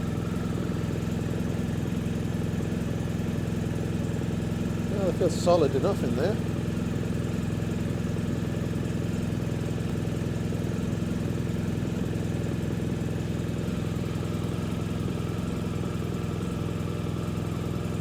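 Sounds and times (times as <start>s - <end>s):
motorcycle engine idling: 0.0s - 18.0s.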